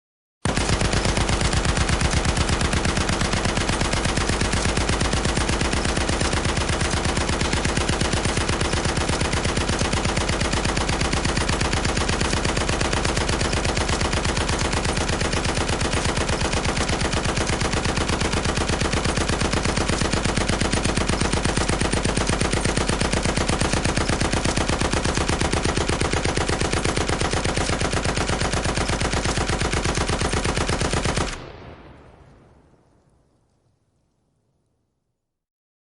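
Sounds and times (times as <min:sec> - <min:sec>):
machine gun firing: 0:00.4 - 0:32.4.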